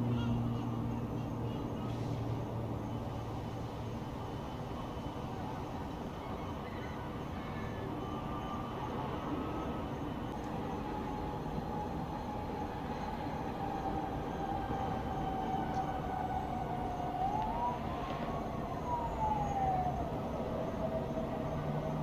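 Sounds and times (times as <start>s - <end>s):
siren wailing: 10.7s - 22.0s.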